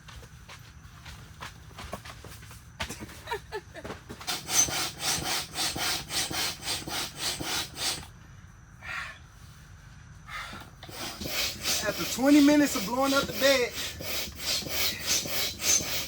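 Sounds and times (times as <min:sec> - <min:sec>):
air pump strokes: 0:04.1 - 0:08.2, 0:10.3 - 0:16.0
scraping and squeaks: 0:04.2 - 0:05.3.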